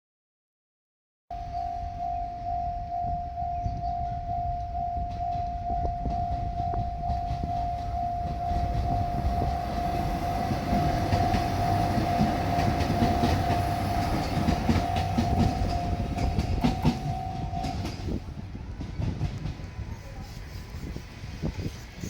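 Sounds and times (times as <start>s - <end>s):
level crossing bell ringing: 1.3s - 18.2s
train rumbling: 1.3s - 22.0s
wheels clicking over rail joints: 3.6s - 20.0s.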